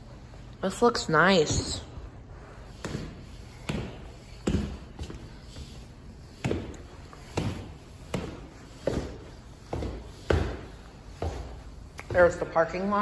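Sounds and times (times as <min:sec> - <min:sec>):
footsteps going down stairs: 0:02.8 - 0:12.5.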